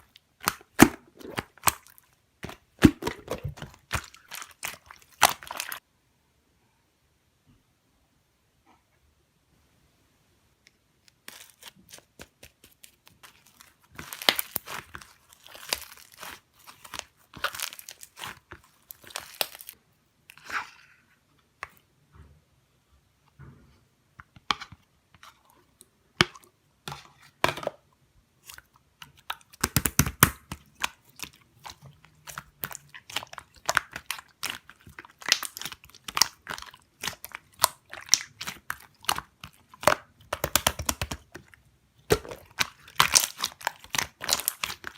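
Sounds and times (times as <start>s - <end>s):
slime crackling and popping: 0.4s - 5.8s, 11.3s - 19.8s, 29.0s - 44.9s.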